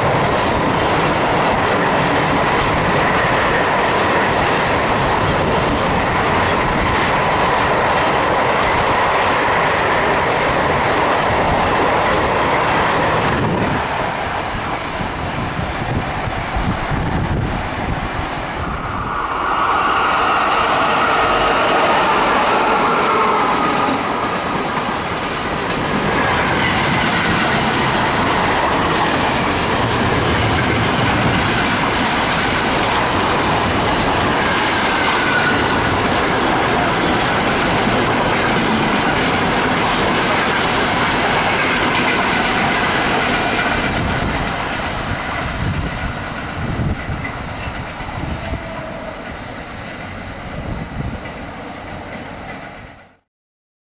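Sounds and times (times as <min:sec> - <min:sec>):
train wheels clacking over rails: 0:00.0 - 0:53.2.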